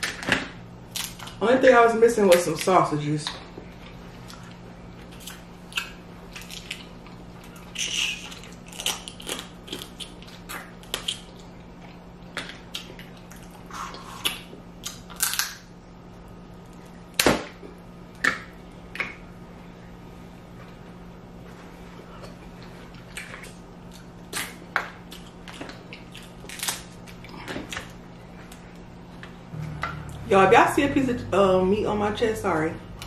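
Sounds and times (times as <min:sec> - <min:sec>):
faint steady hum: 0:00.0 - 0:33.0
crab shells cracking: 0:07.7 - 0:11.4, 0:14.8 - 0:15.7.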